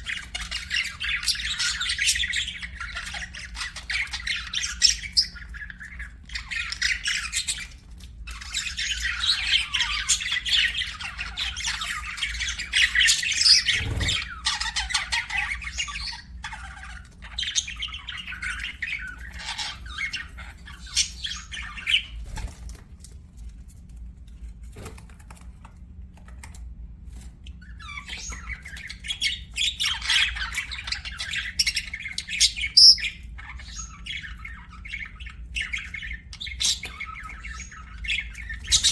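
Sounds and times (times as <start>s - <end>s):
budgerigars chattering and chirping: 0.0s - 22.2s, 27.6s - 38.9s.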